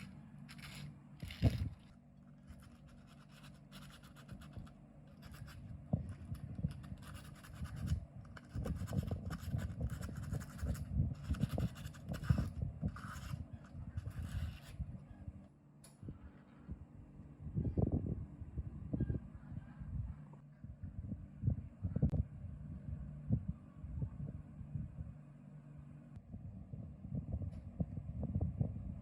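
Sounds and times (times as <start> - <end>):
scratching and scraping strokes: 0.0 - 14.9.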